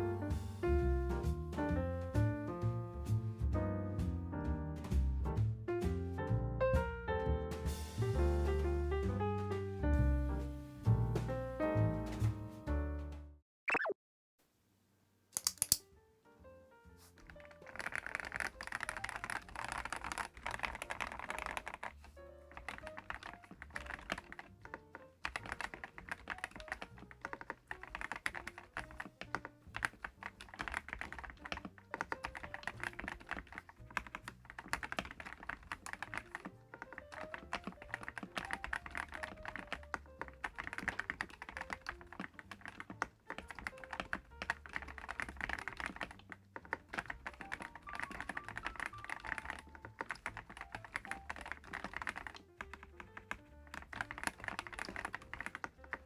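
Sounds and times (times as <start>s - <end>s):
mechanical keyboard typing: 15.4s - 15.8s, 17.2s - 56.0s
faint background music: 15.4s - 56.0s.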